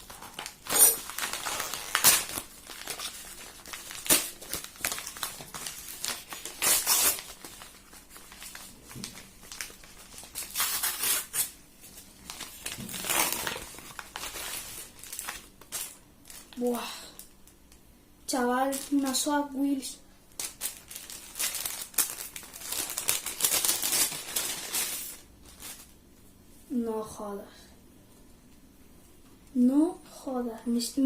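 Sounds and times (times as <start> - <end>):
envelope tearing: 0.0 - 11.6, 12.3 - 16.6, 20.3 - 25.9
packaging crinkling and rustling: 0.0 - 17.7, 18.6 - 19.6, 20.3 - 26.0.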